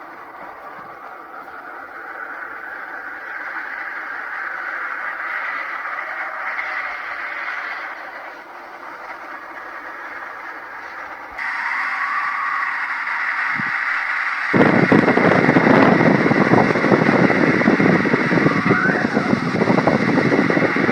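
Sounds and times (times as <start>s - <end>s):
strong wind rushing: 11.4s - 20.9s
deep low rumble: 14.6s - 20.9s.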